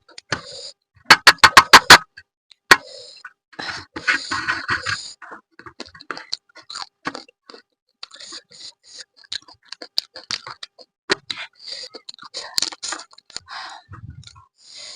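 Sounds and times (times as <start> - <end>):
wet chewing and crunching: 5.6 - 13.5.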